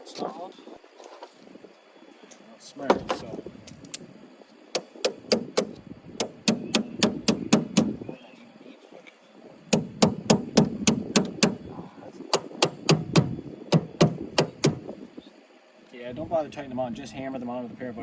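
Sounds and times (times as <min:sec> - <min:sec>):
hammering on metal: 0:04.8 - 0:08.0, 0:09.7 - 0:11.7, 0:12.3 - 0:15.0.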